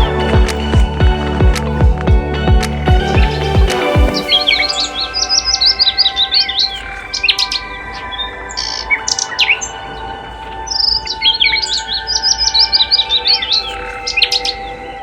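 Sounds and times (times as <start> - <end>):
songbirds chirping and trilling: 3.7 - 15.0.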